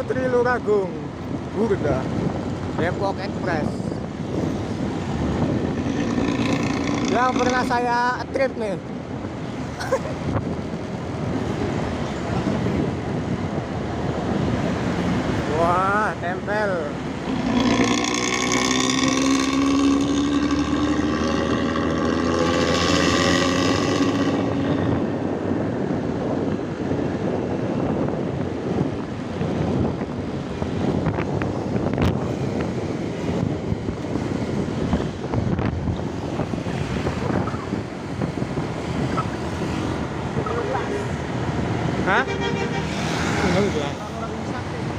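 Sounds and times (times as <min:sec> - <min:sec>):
road and wind noise: 0:00.0 - 0:44.9
bus engine with snoring exhaust: 0:03.5 - 0:07.9, 0:16.9 - 0:42.8.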